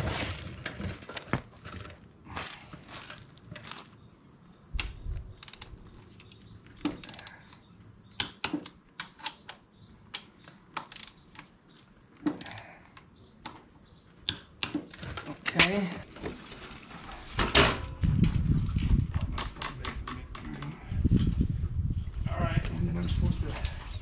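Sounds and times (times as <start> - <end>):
ratcheting torque wrench clicking: 4.8 - 5.8, 7.0 - 7.4, 10.2 - 11.2, 12.4 - 12.7.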